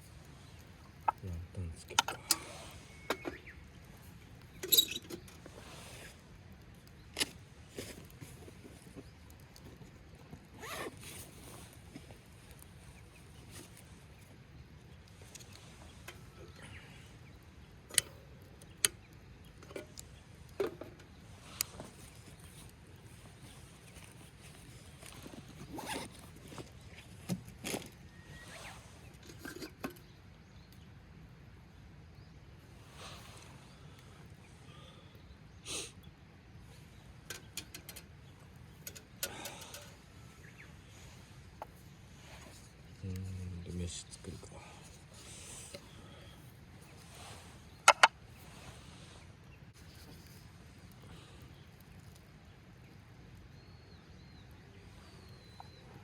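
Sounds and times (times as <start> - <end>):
faint steady background noise: 0.0 - 56.0
hissing rustle: 4.8 - 9.6
camping gear clicks and taps: 17.9 - 22.8, 37.2 - 38.1, 38.8 - 40.0, 47.8 - 48.1.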